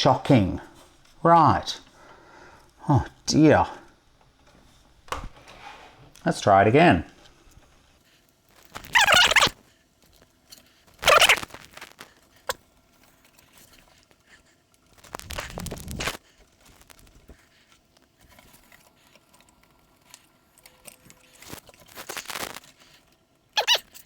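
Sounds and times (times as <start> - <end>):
rustling of handled parts: 7.0 - 24.0.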